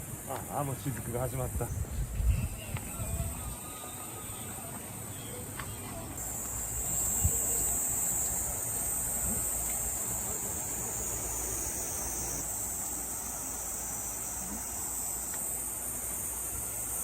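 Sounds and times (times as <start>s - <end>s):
insects chirring: 0.0s - 17.0s.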